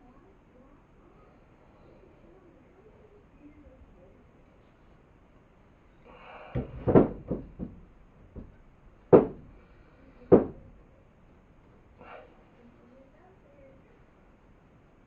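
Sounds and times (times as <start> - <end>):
objects knocking and clunking: 6.5 - 9.6, 10.3 - 10.8.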